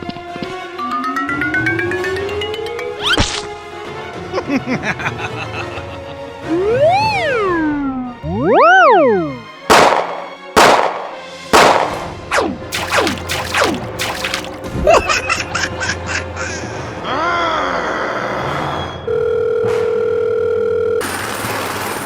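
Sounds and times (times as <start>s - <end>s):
background music: 0.0s - 16.6s
cartoon hits and swishes: 12.7s - 14.8s.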